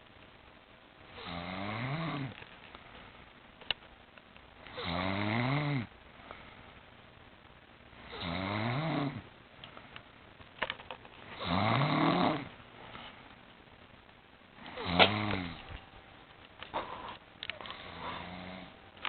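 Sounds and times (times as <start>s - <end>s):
person snoring: 1.2s - 2.4s, 4.7s - 5.9s, 8.0s - 9.2s, 11.4s - 12.5s, 14.7s - 15.6s, 16.8s - 18.8s.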